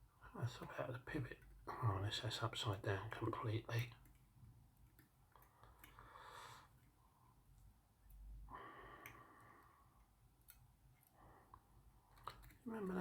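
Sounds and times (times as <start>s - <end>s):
faint small clicks: 3.7s - 13.0s
soft breaths: 5.2s - 13.0s.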